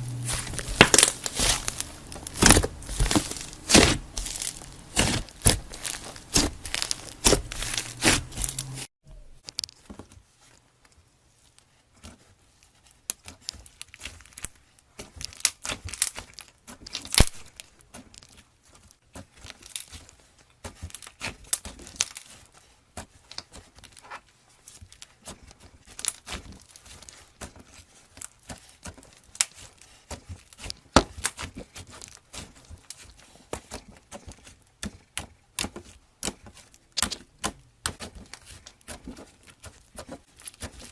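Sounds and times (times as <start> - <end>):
slime crackling and popping: 0.0 - 9.7, 13.1 - 18.4, 35.6 - 40.9.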